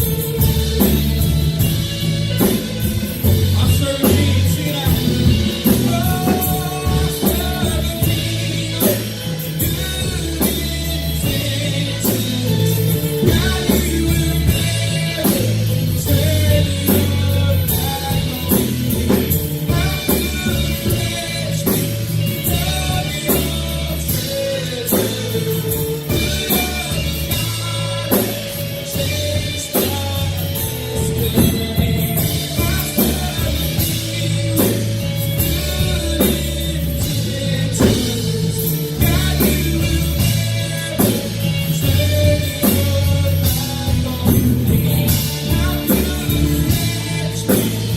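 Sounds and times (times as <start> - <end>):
drum kit beat: 0.0 - 47.9
guitars: 0.0 - 47.9
worship band music: 0.0 - 47.9.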